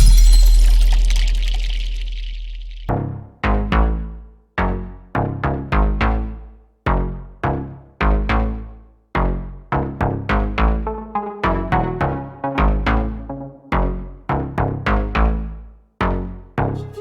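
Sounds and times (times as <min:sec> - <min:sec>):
deep bass hits: 0:00.0 - 0:03.6
synth notes: 0:10.8 - 0:14.0.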